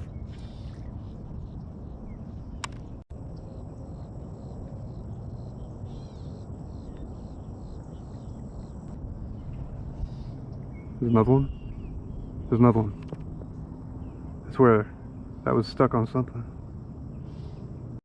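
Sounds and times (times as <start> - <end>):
wind on microphone: 0.0 - 15.6.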